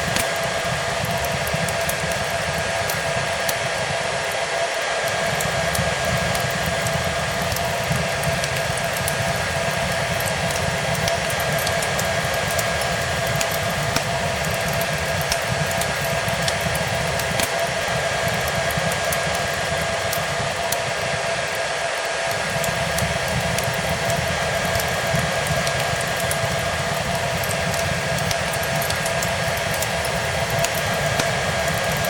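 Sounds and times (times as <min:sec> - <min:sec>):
hair dryer running: 0:00.0 - 0:32.0
wood fire crackling: 0:00.0 - 0:32.0.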